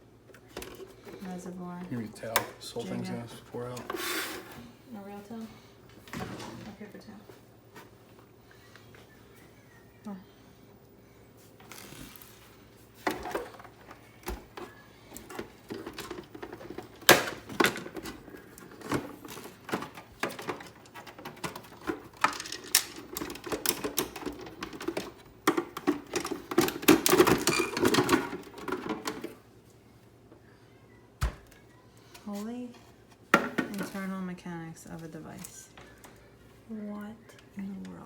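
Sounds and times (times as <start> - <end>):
plastic parts clicking and rattling: 13.0 - 29.4.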